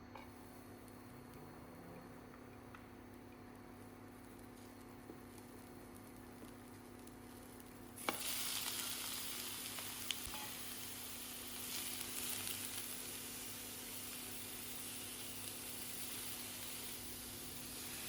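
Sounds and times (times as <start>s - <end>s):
food sizzling in frying pan: 3.9s - 18.0s.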